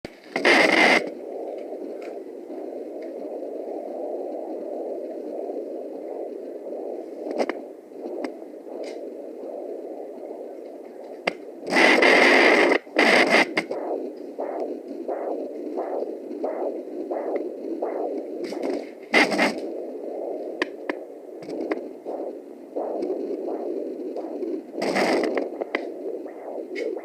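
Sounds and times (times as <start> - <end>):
steady hiss: 0.1 - 27.0
probe scraping on skin: 0.3 - 27.0
whooshing doppler pulse: 12.8 - 27.0.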